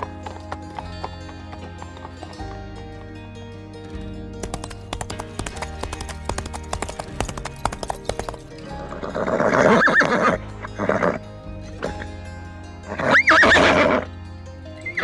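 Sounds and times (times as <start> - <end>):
horse hooves clip-clopping: 0.0 - 3.5, 4.4 - 9.0
background music: 0.0 - 15.0
horse whinnying: 8.8 - 11.2, 12.9 - 14.1.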